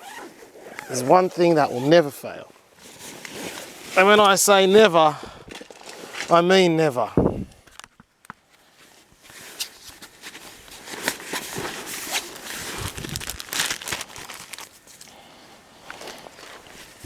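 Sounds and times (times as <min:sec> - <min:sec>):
dry bark crinkling and tearing: 0:12.3 - 0:15.1.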